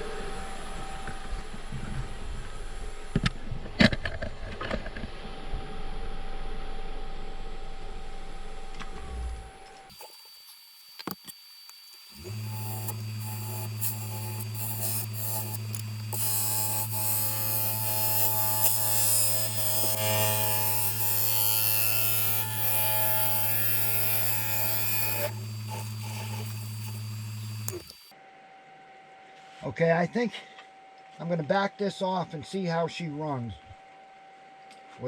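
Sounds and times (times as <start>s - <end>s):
wood lathe motor humming: 9.9s - 28.1s
gouge cutting wood hissing scrape: 11.9s - 28.1s.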